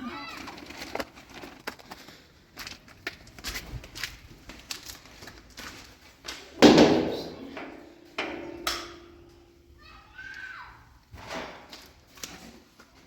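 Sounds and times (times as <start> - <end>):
loud bang: 6.6 - 7.5.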